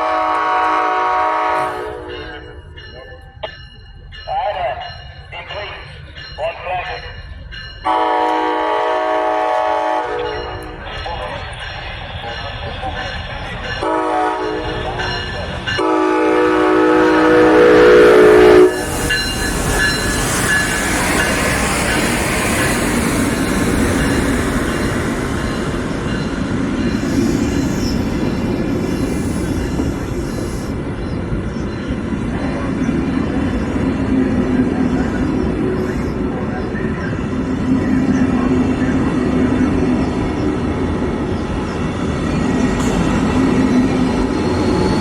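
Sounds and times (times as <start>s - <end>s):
train horn blasts: 0.0s - 2.6s, 7.8s - 10.8s, 13.8s - 15.1s, 15.8s - 19.3s
train rumbling on tracks: 0.0s - 45.0s.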